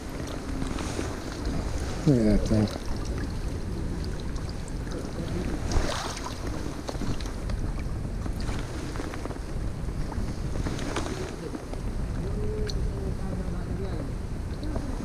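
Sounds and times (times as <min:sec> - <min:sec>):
creek water flowing: 0:00.0 - 0:13.8
wind buffeting microphone: 0:00.0 - 0:15.0
water splash: 0:00.2 - 0:08.8.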